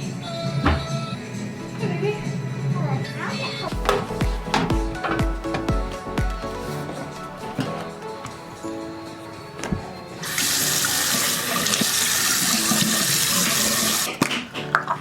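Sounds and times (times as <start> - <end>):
soft background music: 0.0 - 15.0.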